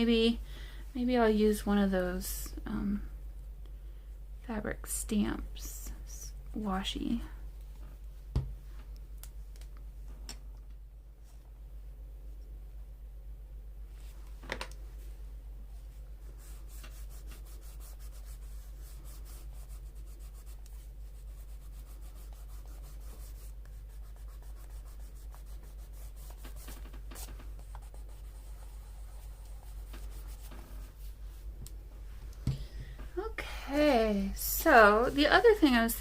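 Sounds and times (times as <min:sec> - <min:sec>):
hands rubbing paper: 0:16.2 - 0:31.2.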